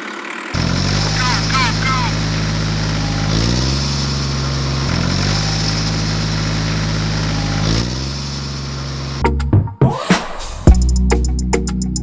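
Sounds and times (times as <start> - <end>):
engine running and revving: 0.0 - 10.9.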